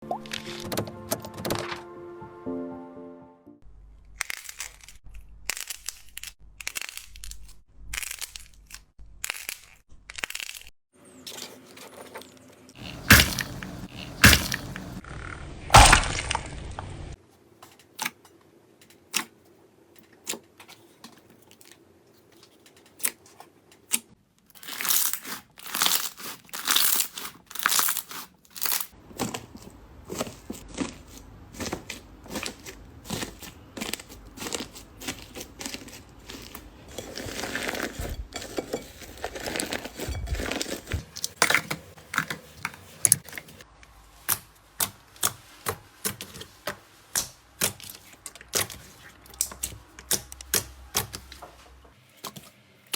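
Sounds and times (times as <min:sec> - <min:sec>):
slime clicking and crackling: 0:04.1 - 0:10.7, 0:12.8 - 0:15.0, 0:24.5 - 0:38.0, 0:47.1 - 0:51.3.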